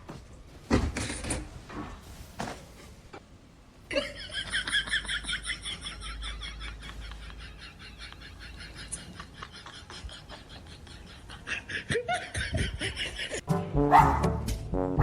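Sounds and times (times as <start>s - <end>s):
person laughing breathily: 5.0s - 13.5s.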